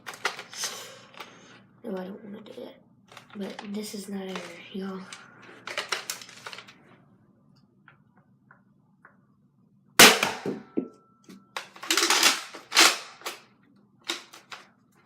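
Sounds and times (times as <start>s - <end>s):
loud sharp crack: 10.0s - 10.6s
toy blaster mechanism clicking: 11.6s - 13.4s.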